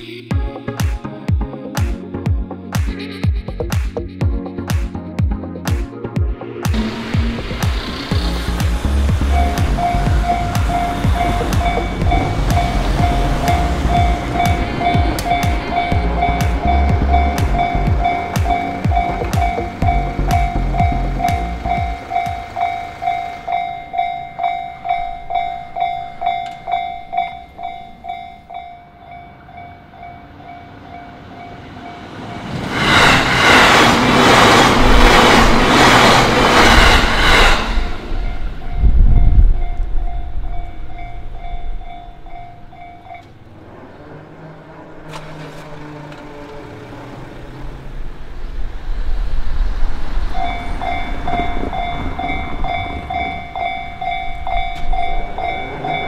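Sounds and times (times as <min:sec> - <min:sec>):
train wheels clacking over joints: 0:06.7 - 0:28.7
level-crossing alarm ringing: 0:09.2 - 0:43.6, 0:50.4 - 0:56.0.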